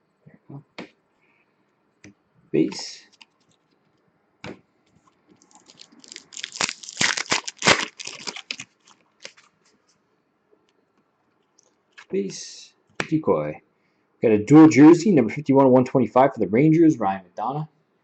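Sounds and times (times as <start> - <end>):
foil wrapper tearing and crinkling: 5.4 - 9.6.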